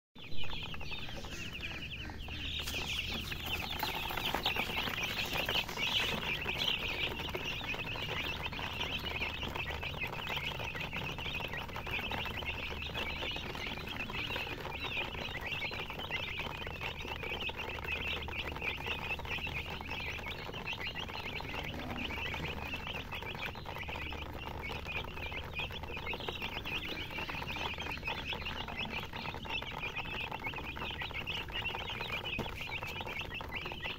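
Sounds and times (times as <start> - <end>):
baby chicks peeping: 0.2 - 33.9.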